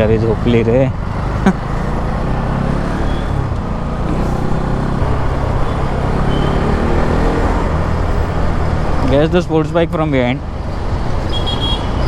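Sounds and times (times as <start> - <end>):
road and wind noise: 0.0 - 12.0
motorcycle engine running: 1.0 - 7.0.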